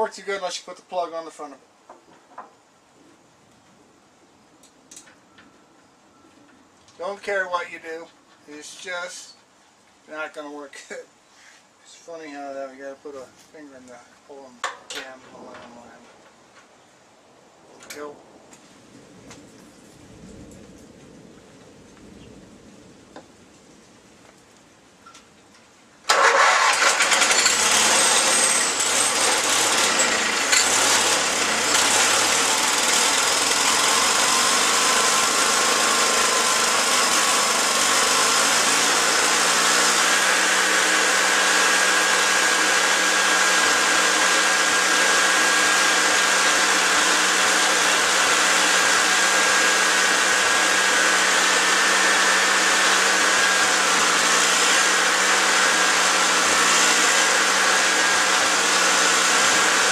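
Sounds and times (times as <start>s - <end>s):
engine starting and running: 26.1s - 59.9s.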